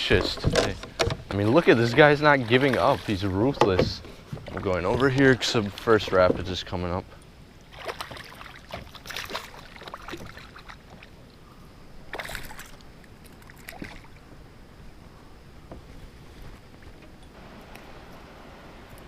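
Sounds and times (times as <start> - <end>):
water splashing: 0.0 - 7.0, 7.6 - 11.2, 12.1 - 14.3.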